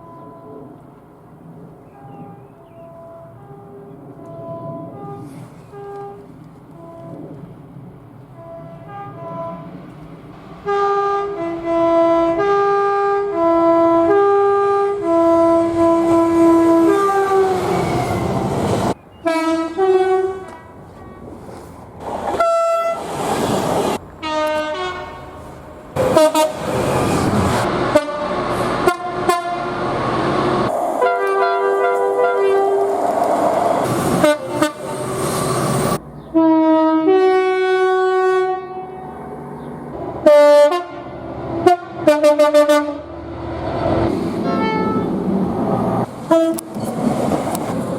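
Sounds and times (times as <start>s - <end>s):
two-tone train horn: 0.0s - 0.7s, 1.9s - 7.2s, 8.4s - 9.7s, 10.6s - 18.4s, 19.2s - 21.2s, 22.4s - 23.0s, 24.2s - 25.4s, 26.0s - 27.2s, 27.9s - 29.8s, 31.0s - 33.0s, 34.1s - 35.3s, 35.9s - 39.2s, 40.2s - 43.2s, 44.4s - 45.2s, 46.3s - 46.8s
trains running: 0.0s - 36.7s, 39.0s - 47.9s
multi-note train horn: 2.0s - 7.2s, 8.4s - 9.7s, 10.6s - 18.3s, 19.2s - 21.1s, 22.4s - 23.0s, 24.2s - 25.4s, 26.0s - 27.2s, 27.9s - 29.9s, 31.0s - 33.0s, 34.1s - 35.2s, 36.3s - 39.1s, 40.2s - 43.2s, 44.4s - 45.1s, 46.3s - 46.7s
short train horn blasts: 2.0s - 7.2s, 8.4s - 9.7s, 10.6s - 18.3s, 19.2s - 21.2s, 22.4s - 23.1s, 24.2s - 25.4s, 26.0s - 27.2s, 27.9s - 29.8s, 31.0s - 33.0s, 34.1s - 35.3s, 36.4s - 39.1s, 40.2s - 43.1s, 44.4s - 45.1s, 46.3s - 46.8s.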